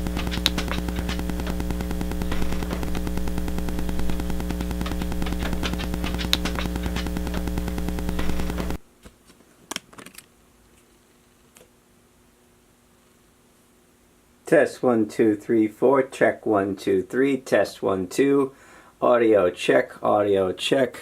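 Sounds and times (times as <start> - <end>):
rapid clicking and thumping: 0.0 - 8.8
buzzing interference hum: 0.0 - 9.0.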